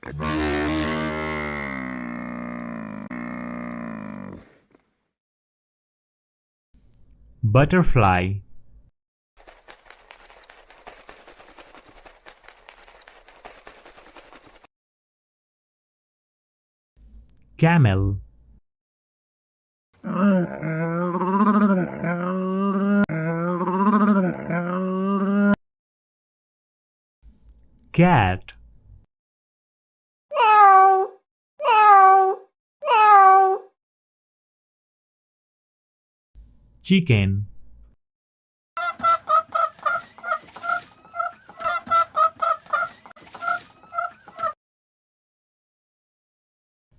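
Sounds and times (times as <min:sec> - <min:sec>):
butterfly rustling flutter: 0:09.4 - 0:14.7
cat meowing: 0:30.3 - 0:33.7.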